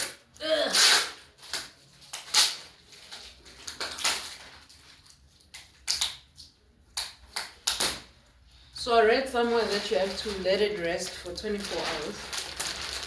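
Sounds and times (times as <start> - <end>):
tape ripping: 0.7 - 2.7
plastic rustling: 1.2 - 5.5, 9.0 - 13.0.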